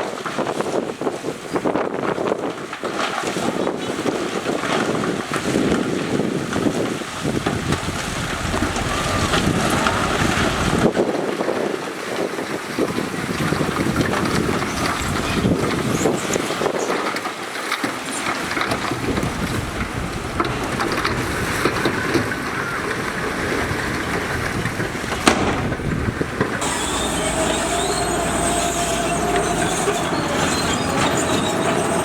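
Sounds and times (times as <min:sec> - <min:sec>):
wind buffeting microphone: 0:03.6 - 0:17.1, 0:18.5 - 0:32.0
diesel earthmoving machinery rumbling: 0:06.6 - 0:11.0, 0:18.8 - 0:32.0.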